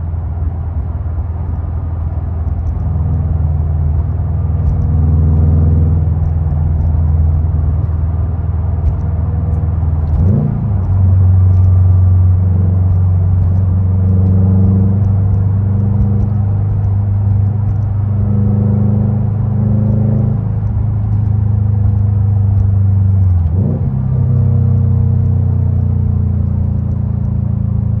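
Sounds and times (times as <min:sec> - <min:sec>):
car engine rumbling: 0:00.0 - 0:28.0.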